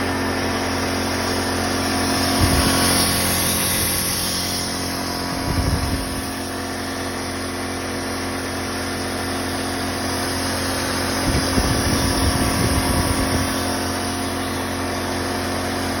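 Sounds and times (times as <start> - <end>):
air compressor running: 0.0 - 16.0
low rumble bursts: 1.9 - 6.8.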